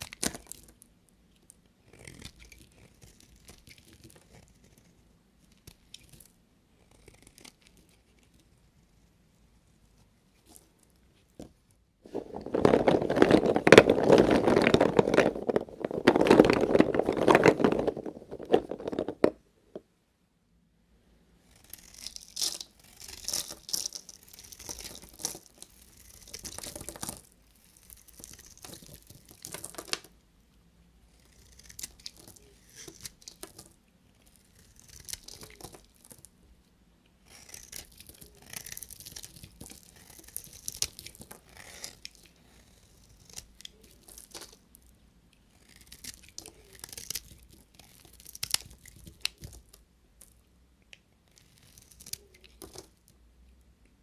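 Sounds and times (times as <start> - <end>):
dense crackling and crunching: 0.0 - 0.8, 12.0 - 19.8, 21.5 - 30.1, 31.2 - 36.3, 37.3 - 44.9, 45.5 - 50.3, 51.3 - 53.2
knife cutting soap: 1.8 - 6.2, 21.5 - 29.7, 37.2 - 44.6.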